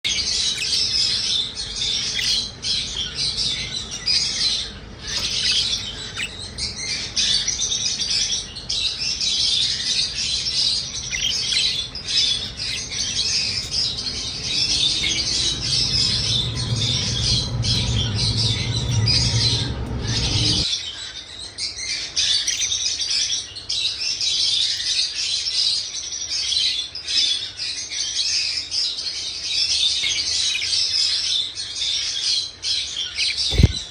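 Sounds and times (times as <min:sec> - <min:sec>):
small birds chirping: 0:00.0 - 0:33.9
low rumble: 0:00.7 - 0:20.7.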